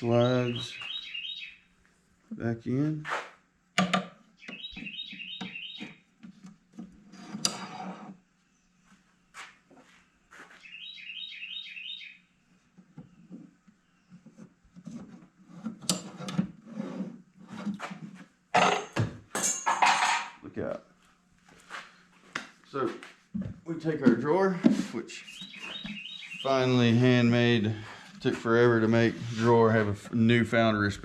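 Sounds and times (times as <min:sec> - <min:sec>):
bird chirping: 0:00.0 - 0:01.7, 0:04.4 - 0:06.1, 0:10.6 - 0:12.3, 0:25.1 - 0:27.6.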